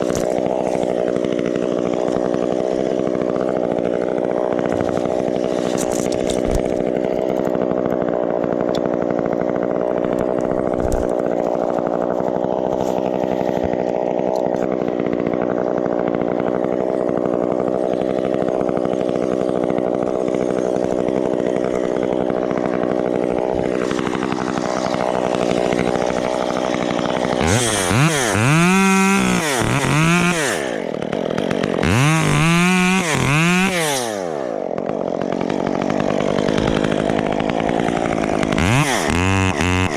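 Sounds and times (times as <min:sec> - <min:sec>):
chainsaw running: 0:00.0 - 0:39.9.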